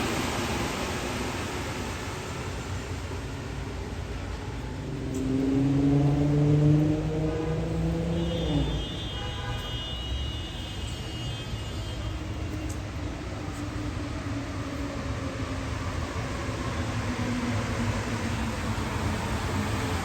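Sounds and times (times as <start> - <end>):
train rumble: 0.0 - 20.0.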